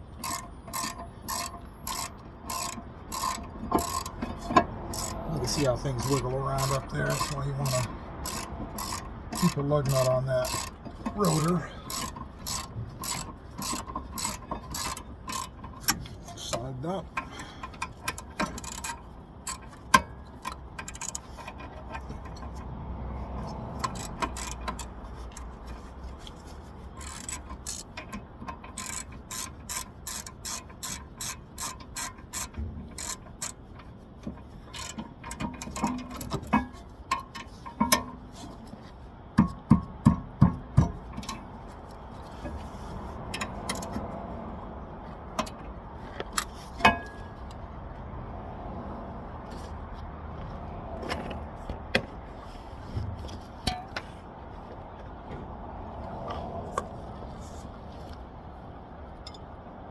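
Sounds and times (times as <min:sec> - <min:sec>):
ratchet wrench clicking: 0:00.0 - 0:22.7, 0:23.4 - 0:38.1, 0:43.3 - 0:44.1
low rumble of traffic: 0:00.0 - 0:59.9.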